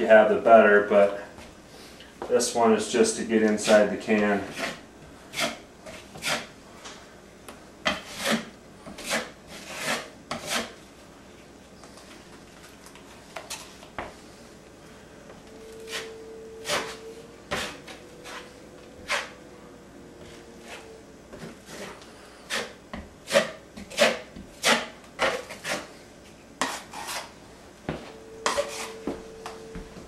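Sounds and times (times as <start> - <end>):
metal knife scraping compound: 3.6 - 6.5, 7.9 - 10.8, 15.6 - 19.4, 21.6 - 25.9, 26.6 - 27.4, 28.4 - 29.0
faint steady tone: 14.2 - 21.3, 27.8 - 30.0.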